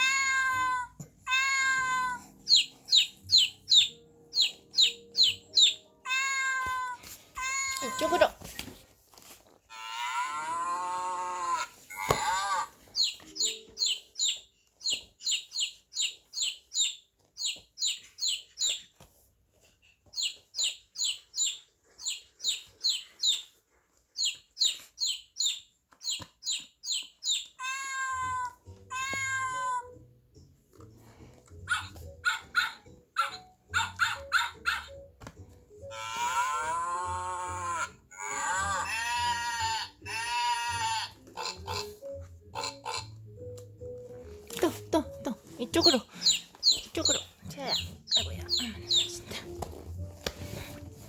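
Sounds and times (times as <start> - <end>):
longer animal calls: 9.7 - 12.7, 35.9 - 43.2.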